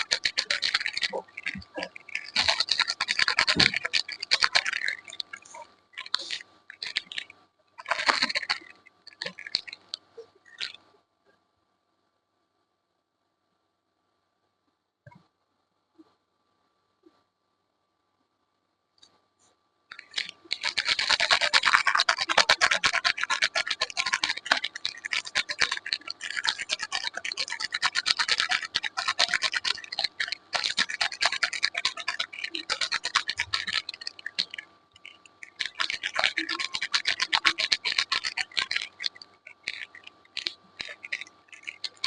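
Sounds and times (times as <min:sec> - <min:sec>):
rapid scratching: 0:00.0 - 0:10.9, 0:19.9 - 0:42.0.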